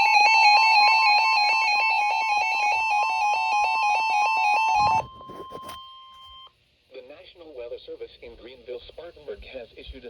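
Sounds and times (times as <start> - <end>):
steady high tone: 0.0 - 5.9
two-tone alarm signal: 0.0 - 6.5.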